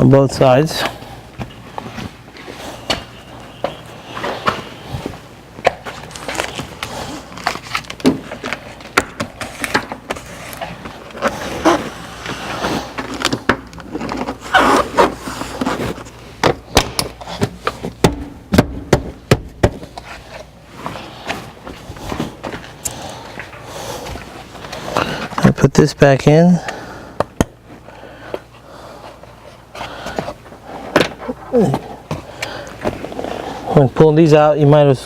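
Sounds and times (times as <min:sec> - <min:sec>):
plastic rustling: 0:00.7 - 0:16.4.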